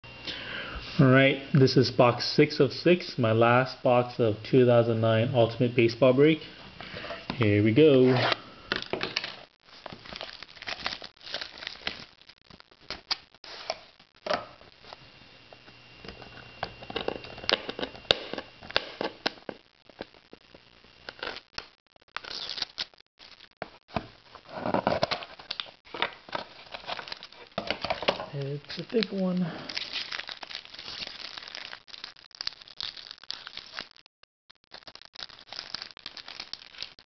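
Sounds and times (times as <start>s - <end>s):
packaging crinkling and tearing: 8.2s - 14.0s, 16.2s - 23.6s, 24.4s - 37.0s.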